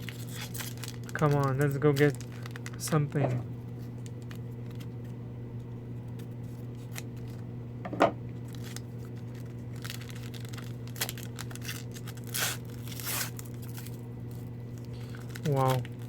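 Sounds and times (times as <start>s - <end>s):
wrappers tearing and crinkling: 0.0s - 5.1s, 8.4s - 16.0s
steady low hum: 0.0s - 16.0s
sharp wrapper snap: 9.8s - 14.0s.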